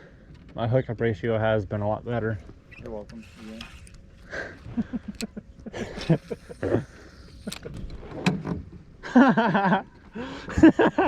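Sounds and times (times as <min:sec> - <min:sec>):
knocks and clunks of boat gear: 0:07.5 - 0:08.9.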